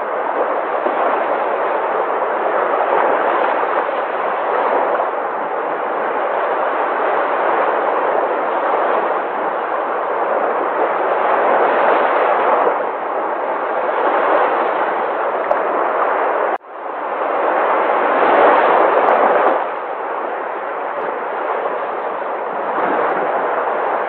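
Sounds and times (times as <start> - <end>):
sea waves breaking: 0.0 - 24.0.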